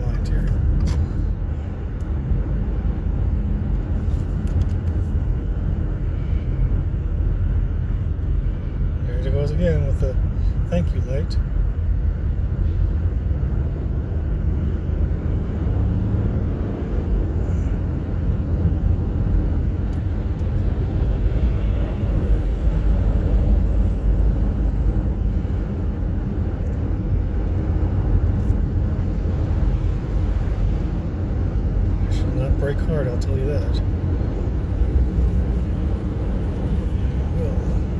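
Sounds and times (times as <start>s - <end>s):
car tyre and engine rumble: 0.0s - 37.9s.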